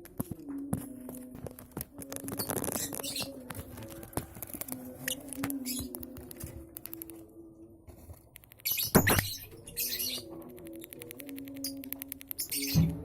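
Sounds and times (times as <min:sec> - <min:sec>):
bird chicks chirping: 0:02.1 - 0:07.0, 0:08.5 - 0:13.0.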